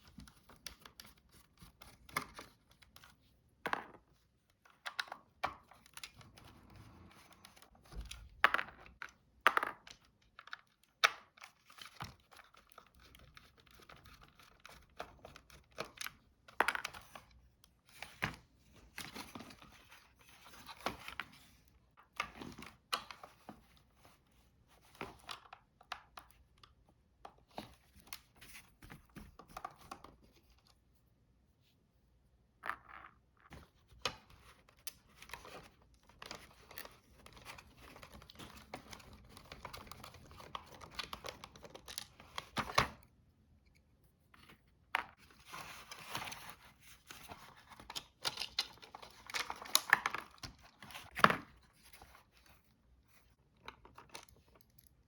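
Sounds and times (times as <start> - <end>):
plastic parts clicking and knocking: 3.6 - 17.4, 47.3 - 51.6.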